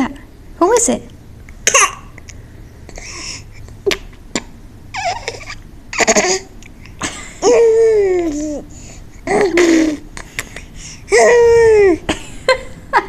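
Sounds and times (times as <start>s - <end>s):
baby cooing and grunting: 3.8s - 6.5s, 7.4s - 10.3s, 11.1s - 12.1s.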